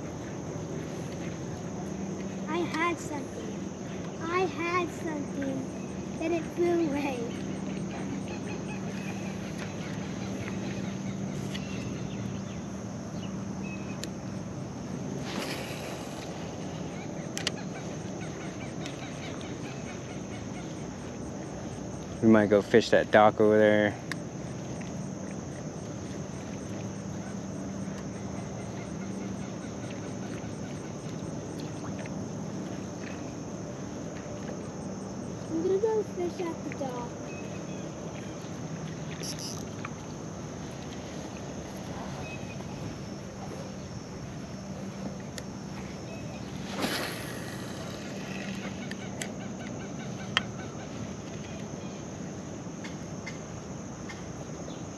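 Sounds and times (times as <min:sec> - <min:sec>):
faint pulsing chirp: 0:00.0 - 0:54.9
insect calls: 0:00.0 - 0:54.9
steady low hum: 0:00.0 - 0:54.9
birds chirping: 0:01.9 - 0:14.1, 0:35.2 - 0:39.8
insects shrilling: 0:15.1 - 0:20.6, 0:39.2 - 0:39.7, 0:46.0 - 0:50.7.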